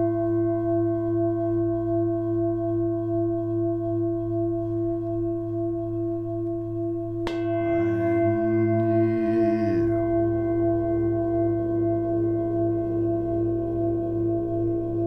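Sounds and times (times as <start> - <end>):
singing bowl ringing: 7.3 - 11.4.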